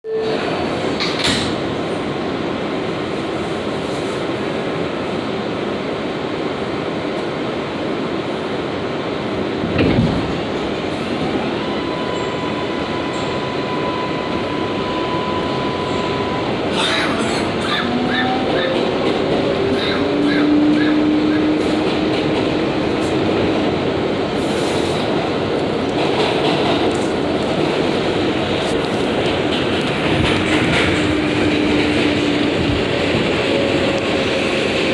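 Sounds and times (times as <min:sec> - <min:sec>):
subway train rumbling on rails: 0:00.0 - 0:34.9
train wheels clattering: 0:24.4 - 0:34.9.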